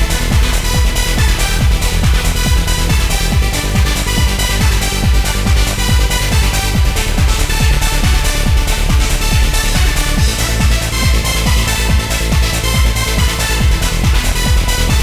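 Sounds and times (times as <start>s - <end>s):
kick drum: 0.0s - 15.0s
sustained synth chords: 0.0s - 15.0s
trance music: 0.0s - 15.0s.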